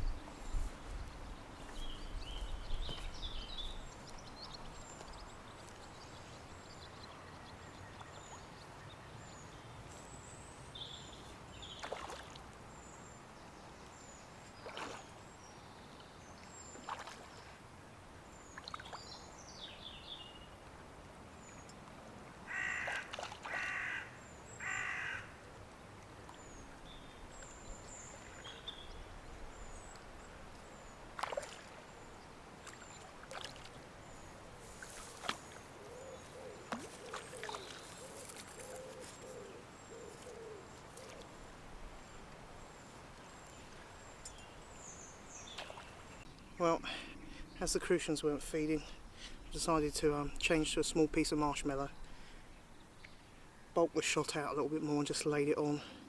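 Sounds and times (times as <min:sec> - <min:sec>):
small birds chirping: 0:00.0 - 0:17.6, 0:18.3 - 0:20.6, 0:26.2 - 0:56.0
crow cawing: 0:22.5 - 0:25.4.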